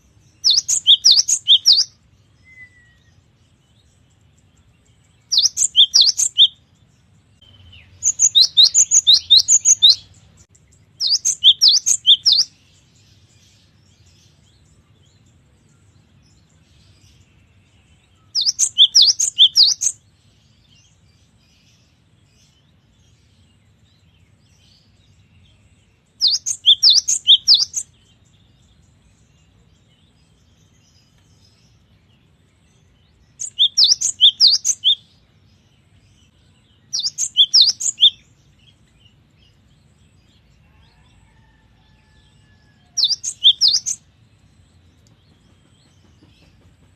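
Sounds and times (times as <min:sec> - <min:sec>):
bird singing rapid high notes: 0:00.4 - 0:03.0, 0:05.3 - 0:06.6, 0:07.8 - 0:10.1, 0:11.0 - 0:12.5, 0:18.4 - 0:20.0, 0:26.2 - 0:27.8, 0:33.4 - 0:35.0, 0:36.9 - 0:38.2.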